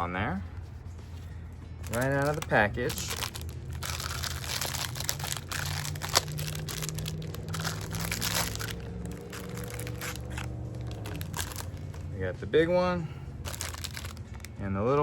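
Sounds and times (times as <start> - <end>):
plastic packaging crinkling: 1.2 - 12.1, 13.4 - 14.5.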